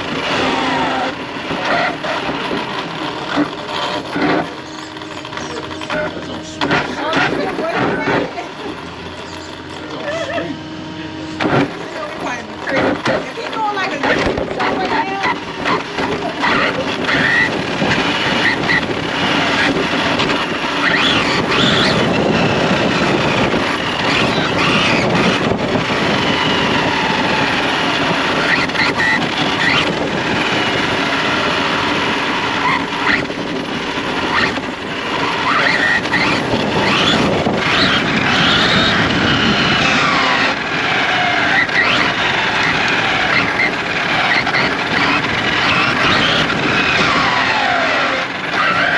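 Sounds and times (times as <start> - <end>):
toy car electric motor whining: 0.0 - 10.7, 11.3 - 48.9
tyre squeals: 15.0 - 18.9, 20.8 - 22.1, 24.0 - 25.4, 28.4 - 29.9, 32.5 - 33.3, 34.3 - 34.6, 35.2 - 48.9.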